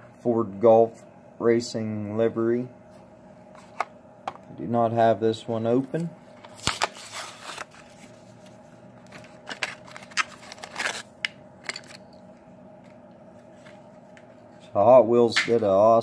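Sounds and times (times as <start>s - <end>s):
faint steady hum: 0.0s - 16.0s
plastic packaging crinkling: 6.4s - 12.0s.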